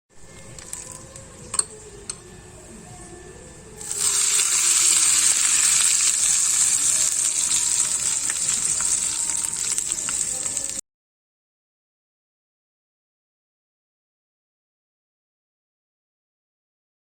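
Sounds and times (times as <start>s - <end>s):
oil sizzling in a hot pan: 3.8s - 10.8s.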